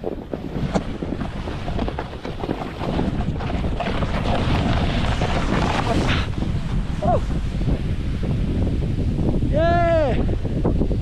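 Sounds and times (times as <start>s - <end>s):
snowboard sliding on snow: 0.0s - 11.0s
wind buffeting microphone: 0.0s - 11.0s.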